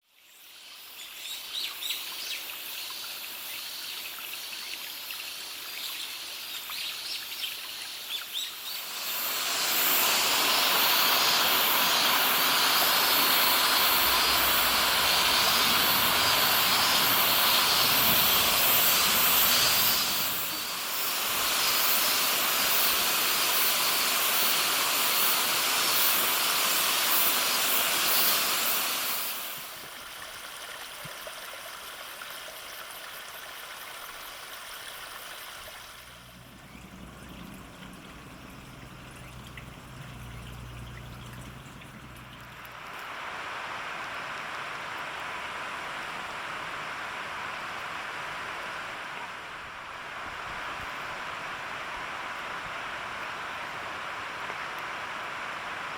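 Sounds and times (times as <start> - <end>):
stream rushing over rocks: 8.9 - 55.9
birds chirping: 35.9 - 42.8.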